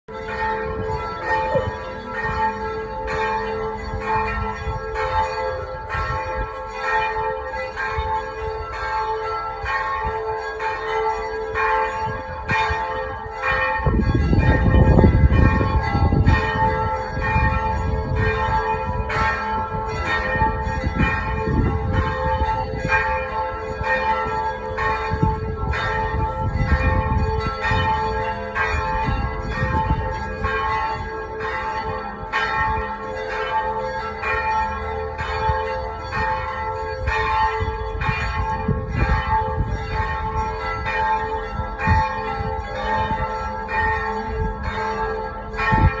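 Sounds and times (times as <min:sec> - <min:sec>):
church bells pealing: 0:00.1 - 0:46.0.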